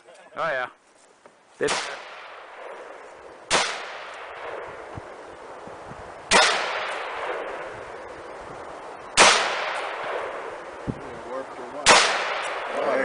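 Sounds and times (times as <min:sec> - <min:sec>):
gunshot echo: 0:01.6 - 0:04.9, 0:06.3 - 0:08.0, 0:09.1 - 0:10.8, 0:11.8 - 0:12.9
rifle shots: 0:01.6 - 0:04.9, 0:06.2 - 0:08.2, 0:09.1 - 0:10.8, 0:11.8 - 0:13.0.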